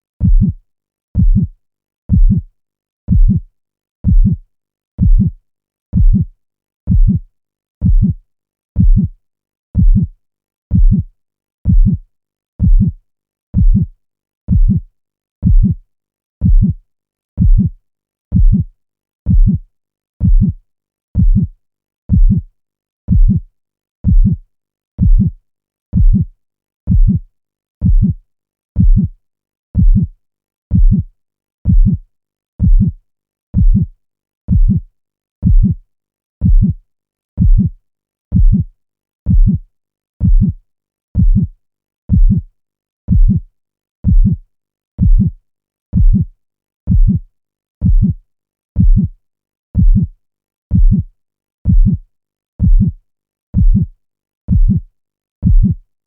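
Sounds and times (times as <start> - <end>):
heartbeat thumps: 0.2 - 0.6, 1.2 - 1.5, 2.1 - 2.4, 3.1 - 3.4, 4.0 - 4.4, 5.0 - 5.3, 6.0 - 6.2, 6.9 - 7.2, 7.8 - 8.2, 8.8 - 9.1, 9.8 - 10.1, 10.7 - 11.1, 11.7 - 12.0, 12.6 - 13.0, 13.6 - 13.9, 14.5 - 14.8, 15.4 - 15.8, 16.4 - 16.8, 17.4 - 17.7, 18.3 - 18.6, 19.3 - 19.6, 20.2 - 20.6, 21.2 - 21.5, 22.1 - 22.4, 23.1 - 23.4, 24.0 - 24.4, 25.0 - 25.3, 26.0 - 26.2, 26.9 - 27.2, 27.8 - 28.2, 28.8 - 29.1, 29.8 - 30.1, 30.7 - 31.1, 31.7 - 32.0, 32.6 - 33.0, 33.6 - 33.9, 34.5 - 34.8, 35.4 - 35.8, 36.4 - 36.7, 37.4 - 37.7, 38.3 - 38.6, 39.3 - 39.6, 40.2 - 40.6, 41.2 - 41.5, 42.1 - 42.4, 43.1 - 43.4, 44.0 - 44.4, 45.0 - 45.3, 46.0 - 46.2, 46.9 - 47.2, 47.8 - 48.1, 48.8 - 49.1, 49.8 - 50.1, 50.7 - 51.0, 51.7 - 52.0, 52.6 - 53.0, 53.6 - 53.9, 54.5 - 54.8, 55.4 - 55.8.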